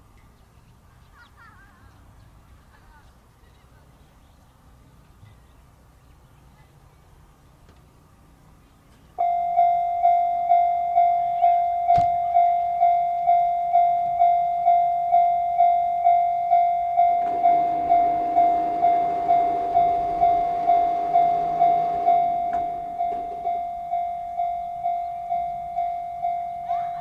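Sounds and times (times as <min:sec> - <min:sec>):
level crossing warning bell: 0:09.2 - 0:27.0
low rumbling: 0:09.2 - 0:27.0.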